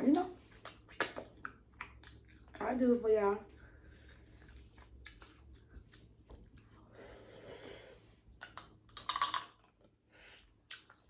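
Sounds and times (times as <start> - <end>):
chewing: 0.6 - 2.7, 3.5 - 10.0, 10.7 - 11.0
crab shell clicking and cracking: 8.4 - 9.8.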